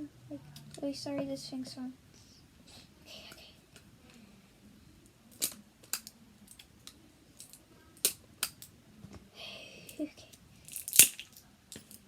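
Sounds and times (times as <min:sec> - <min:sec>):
small objects clicking and tapping: 0:05.3 - 0:08.7, 0:10.7 - 0:12.0.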